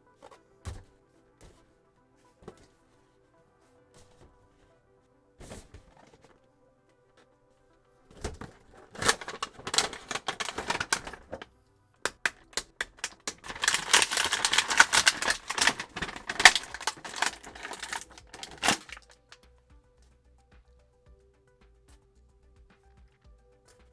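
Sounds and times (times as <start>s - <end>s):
plastic packaging crackling: 8.3s - 11.4s, 12.1s - 19.2s.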